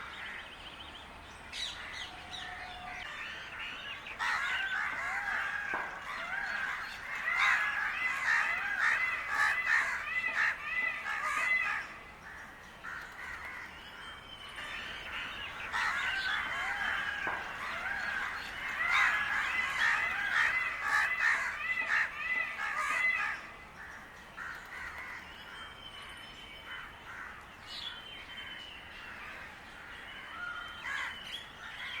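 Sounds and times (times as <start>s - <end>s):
crows cawing: 4.1s - 13.7s, 14.8s - 25.2s.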